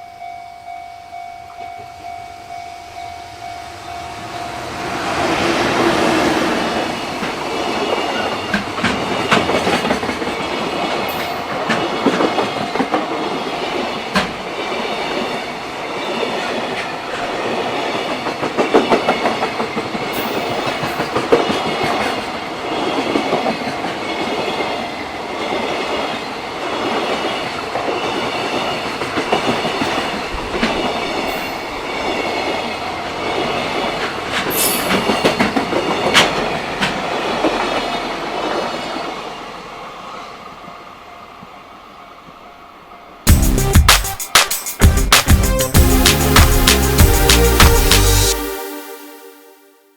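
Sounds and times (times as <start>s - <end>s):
train wheels clattering over rail joints: 7.1s - 24.8s, 26.8s - 38.6s.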